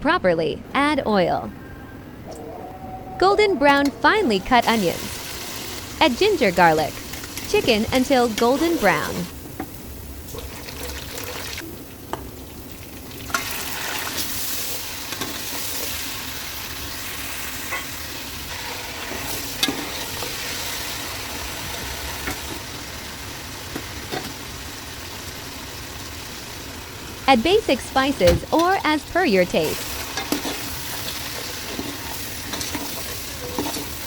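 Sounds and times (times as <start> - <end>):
chicken sizzling in oil: 9.7 - 27.3, 29.6 - 34.0.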